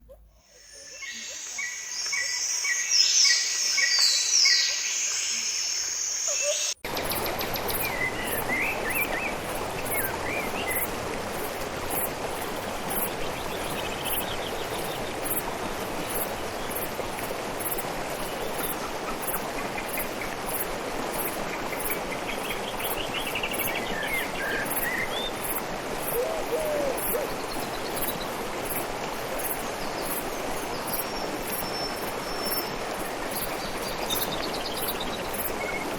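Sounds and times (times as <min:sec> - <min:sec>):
small birds chirping: 0:00.1 - 0:11.0.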